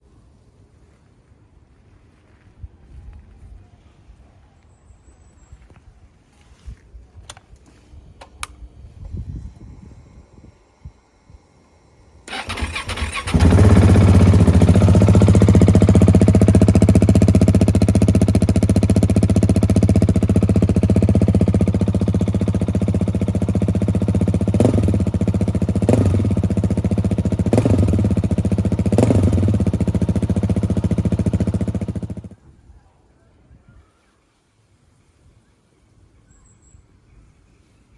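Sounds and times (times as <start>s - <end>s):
motorcycle engine starting: 7.3s - 32.4s
motorcycle engine idling: 7.9s - 32.4s.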